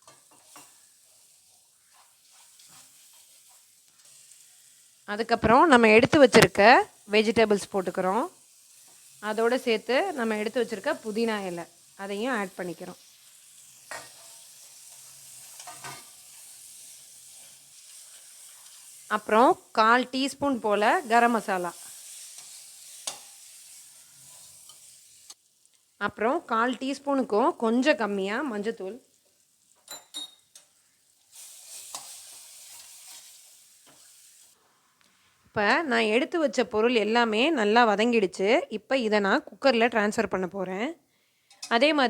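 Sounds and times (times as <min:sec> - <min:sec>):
spoon scraping pan: 0:00.0 - 0:04.6, 0:12.3 - 0:19.4, 0:20.4 - 0:25.4, 0:29.7 - 0:34.5
vegetables sizzling in oil: 0:00.0 - 0:40.5
spoon clicking against pan: 0:22.4 - 0:23.4.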